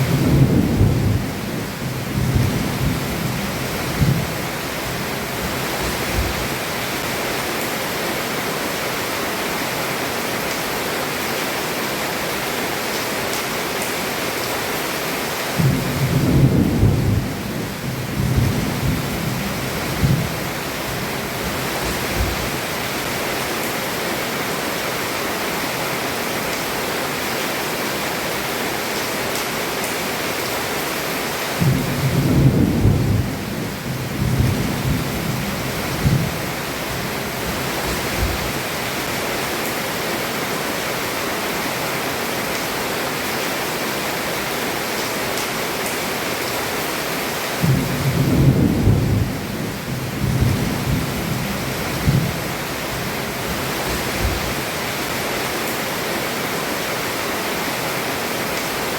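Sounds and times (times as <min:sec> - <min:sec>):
thunder rumbling: 0:00.0 - 0:06.6, 0:15.6 - 0:22.5, 0:31.6 - 0:38.6, 0:47.6 - 0:54.6
heavy rain on a roof: 0:00.0 - 0:58.9.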